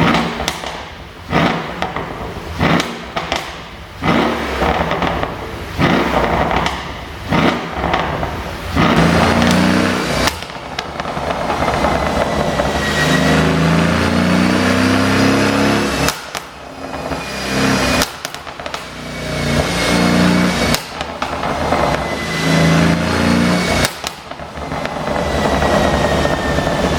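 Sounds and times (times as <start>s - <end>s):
car engine revving: 0.0s - 26.9s
exhaust pops and bangs: 0.0s - 26.9s.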